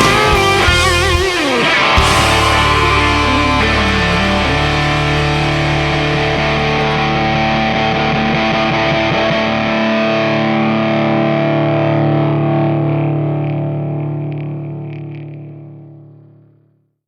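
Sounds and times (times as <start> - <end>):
deep bass: 0.0 - 1.3, 2.0 - 10.3
distorted electric guitar chords: 0.0 - 16.7.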